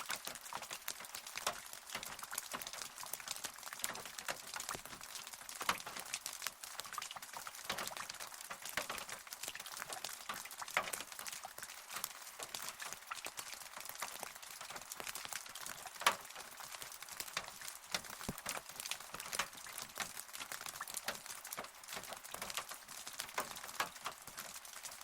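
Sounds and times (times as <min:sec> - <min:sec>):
rain falling: 0:00.0 - 0:25.0
raindrops landing: 0:00.0 - 0:25.0.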